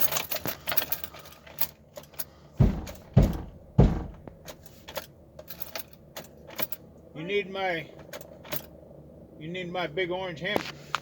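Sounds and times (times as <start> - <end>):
heavy thumps against a truck: 2.6 - 4.5.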